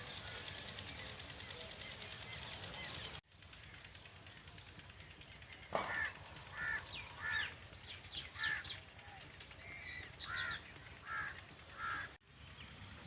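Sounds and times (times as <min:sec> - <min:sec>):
bird harsh calls: 0:05.7 - 0:08.8, 0:09.6 - 0:12.2.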